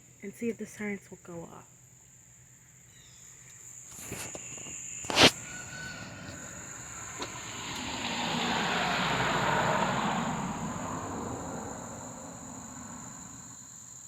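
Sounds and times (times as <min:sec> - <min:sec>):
insects droning: 0:00.0 - 0:14.0
vehicle approaching: 0:05.1 - 0:14.0.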